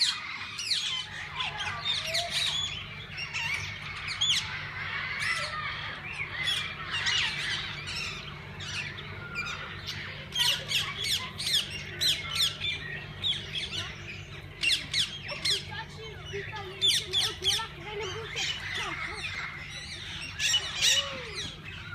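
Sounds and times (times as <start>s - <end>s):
parakeets squawking and chattering: 0.0s - 21.9s
steady low hum: 0.0s - 21.9s.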